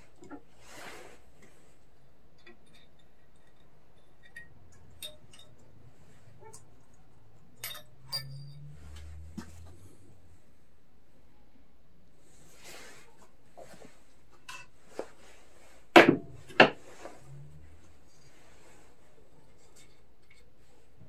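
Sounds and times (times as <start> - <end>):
metallic clinks of tools: 2.8 - 5.7, 7.6 - 9.0.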